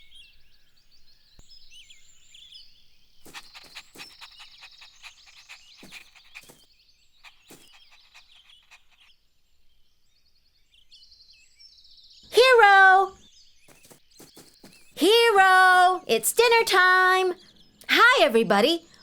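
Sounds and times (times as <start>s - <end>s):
birds chirping: 1.4s - 6.6s, 7.2s - 9.9s, 12.4s - 19.0s
animal calls: 3.3s - 6.6s, 7.2s - 9.1s.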